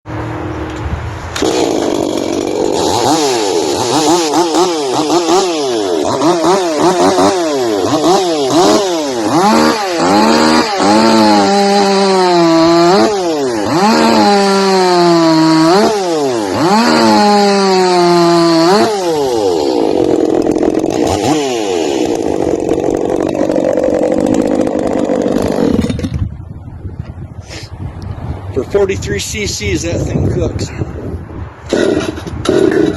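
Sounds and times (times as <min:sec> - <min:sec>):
chainsaw revving: 0:01.4 - 0:26.2, 0:31.7 - 0:32.9
chainsaw cutting log: 0:01.4 - 0:26.3, 0:31.7 - 0:32.9.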